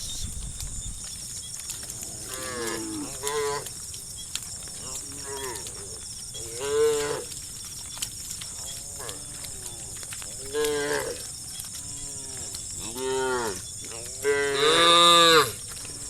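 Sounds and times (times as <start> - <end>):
cattle mooing: 11.9 - 16.0.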